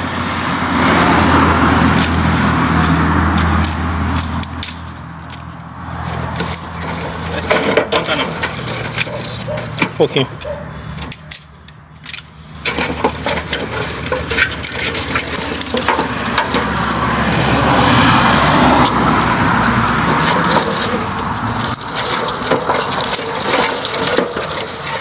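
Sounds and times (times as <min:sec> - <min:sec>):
firewood cracking and knocking: 0:00.0 - 0:25.0.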